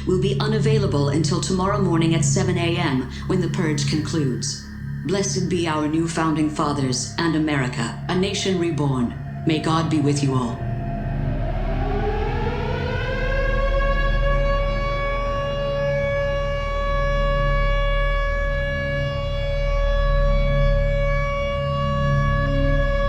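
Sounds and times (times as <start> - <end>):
low steady hum: 0.0 - 15.8
warning siren wailing: 0.0 - 23.0.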